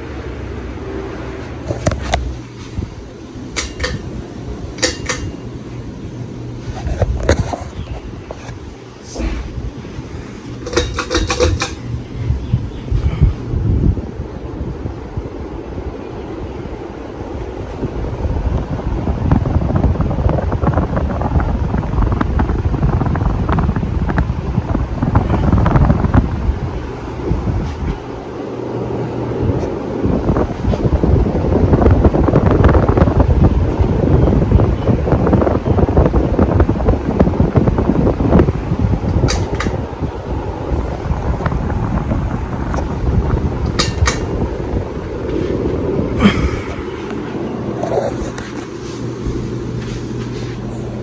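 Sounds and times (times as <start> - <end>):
ceiling fan motor humming: 0.0 - 51.0
pull-chain switch clicks: 3.6 - 4.2, 4.8 - 5.5, 10.6 - 11.9, 39.1 - 39.8, 43.7 - 44.4.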